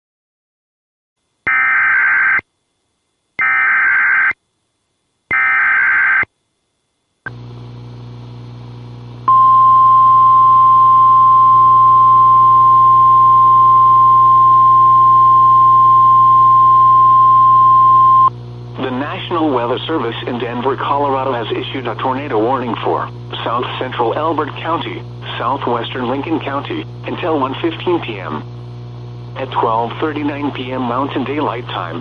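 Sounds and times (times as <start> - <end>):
piercing weather radio tone: 1.5 - 2.4, 3.4 - 4.4, 5.3 - 6.3, 9.3 - 19.0
low radio hum: 1.5 - 32.0.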